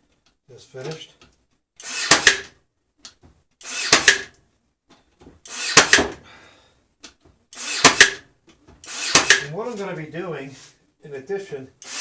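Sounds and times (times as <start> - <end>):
pneumatic nailer firing: 1.8 - 2.6, 3.6 - 4.3, 5.4 - 6.2, 7.6 - 9.5.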